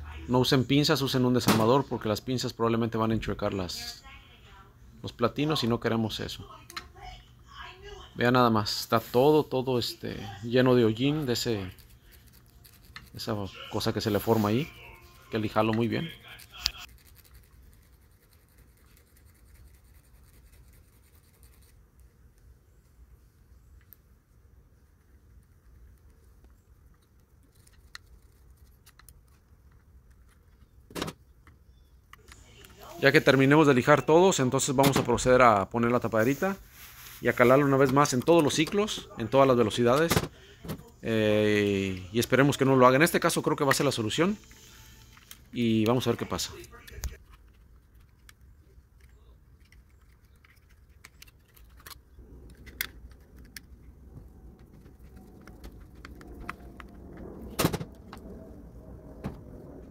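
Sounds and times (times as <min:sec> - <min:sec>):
faint low hum: 0:00.0 - 0:59.9
sandpaper scratching metal: 0:16.0 - 0:21.7.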